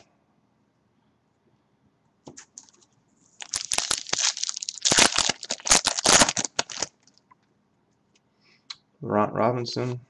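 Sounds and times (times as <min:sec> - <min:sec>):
foil wrapper crinkling and tearing: 0:03.4 - 0:07.1.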